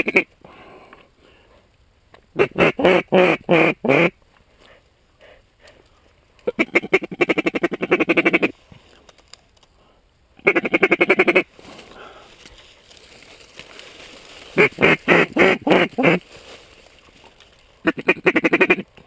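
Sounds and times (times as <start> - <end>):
duck quacking: 0.0 - 0.3, 2.4 - 4.2, 6.4 - 8.5, 10.4 - 11.5, 14.6 - 16.2, 17.8 - 18.9.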